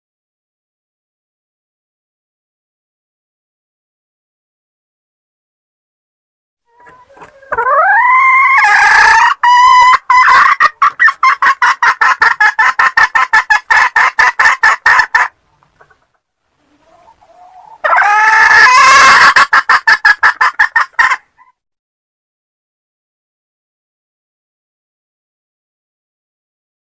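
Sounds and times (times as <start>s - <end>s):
hen cackling: 6.7s - 21.6s.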